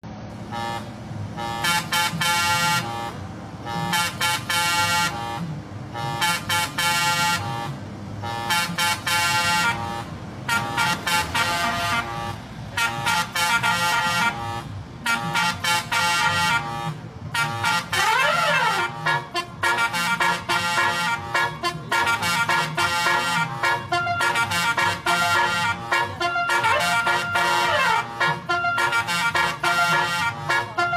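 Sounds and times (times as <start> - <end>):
bus multi-tone horn melody: 0.3 - 30.9.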